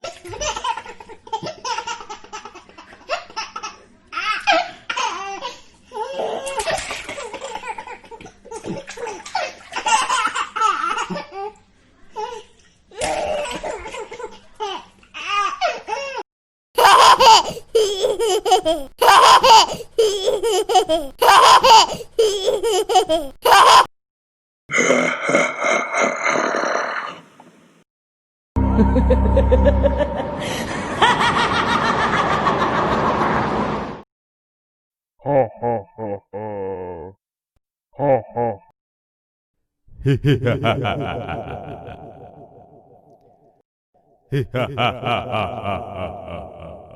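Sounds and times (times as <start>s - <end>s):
hearty laugh bursts: 28.6s - 33.2s, 39.9s - 43.0s, 44.3s - 46.9s
people laughing: 28.6s - 33.6s, 40.0s - 42.9s, 44.3s - 46.9s.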